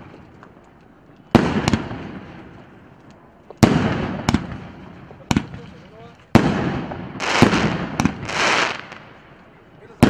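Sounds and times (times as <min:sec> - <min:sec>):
firework bangs: 0:01.3 - 0:02.5, 0:03.6 - 0:09.2
firework crack with rumbling echo: 0:01.3 - 0:02.8, 0:03.6 - 0:10.0.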